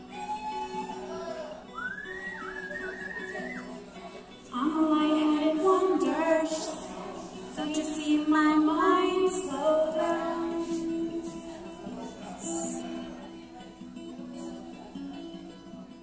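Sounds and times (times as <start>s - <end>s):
woman singing: 4.5s - 13.0s.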